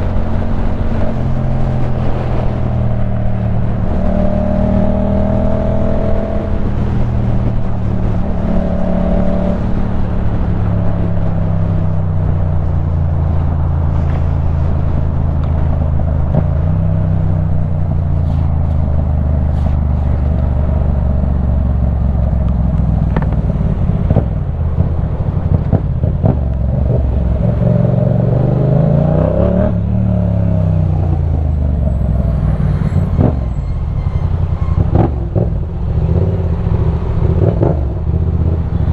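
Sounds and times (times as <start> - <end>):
motorcycle engine running: 0.0 - 28.9
wind rush: 0.0 - 38.9.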